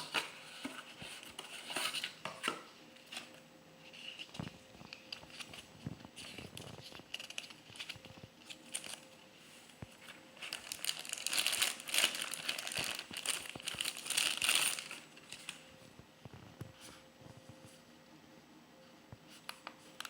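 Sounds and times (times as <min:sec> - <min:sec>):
packaging crinkling: 0:04.1 - 0:09.2, 0:09.9 - 0:15.7.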